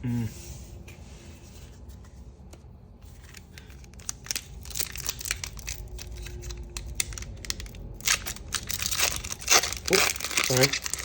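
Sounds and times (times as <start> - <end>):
foil wrapper crinkling and tearing: 3.2 - 11.0.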